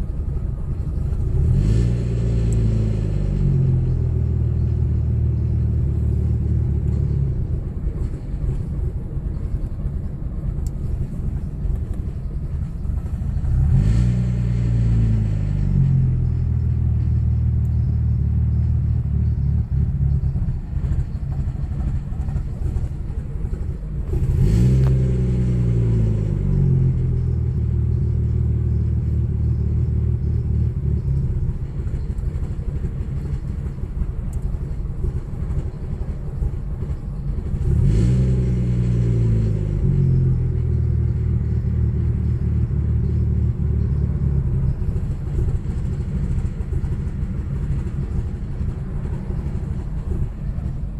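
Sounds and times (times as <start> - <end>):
car engine idling unevenly: 0.0 - 37.8, 38.4 - 50.9
engine revving: 1.2 - 6.9, 13.0 - 20.1, 24.1 - 31.5, 37.5 - 50.7.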